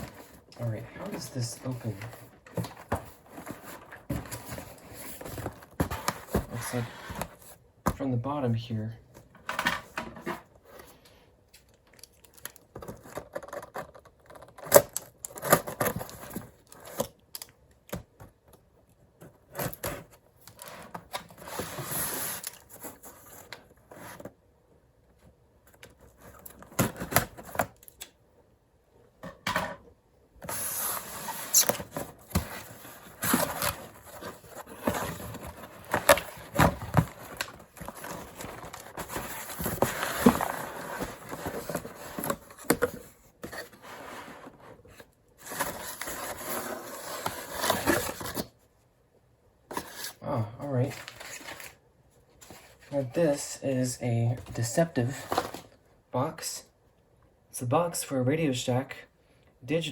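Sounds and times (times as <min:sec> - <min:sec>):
cardboard and paper tearing rustling: 0:00.0 - 0:07.5, 0:30.4 - 0:48.5, 0:50.8 - 0:51.8.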